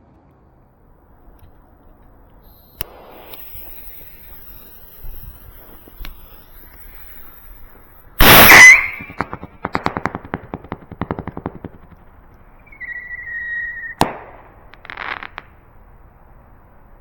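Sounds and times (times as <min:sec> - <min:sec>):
firework strobe stars crackling: 0:00.9 - 0:17.0
firework bang: 0:01.3 - 0:15.6
burst of hiss: 0:02.4 - 0:09.2
firework whistle: 0:02.4 - 0:09.4, 0:12.6 - 0:14.2.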